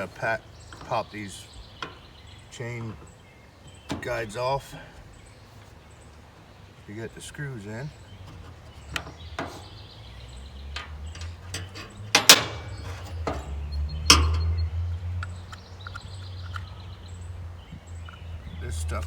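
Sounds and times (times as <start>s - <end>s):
hand tools clicking and clinking: 8.2s - 16.7s.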